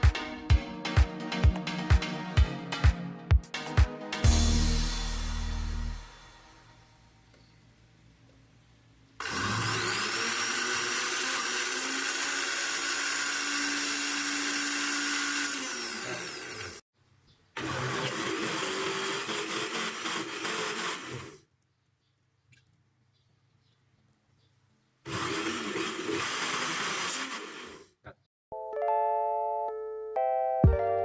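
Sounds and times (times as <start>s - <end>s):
electric blender running: 9.2s - 16.8s, 17.6s - 21.4s, 25.1s - 27.9s.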